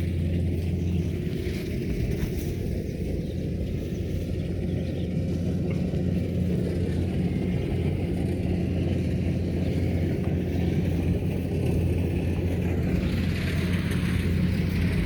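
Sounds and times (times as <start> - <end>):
harvester engine droning: 0.0 - 15.0.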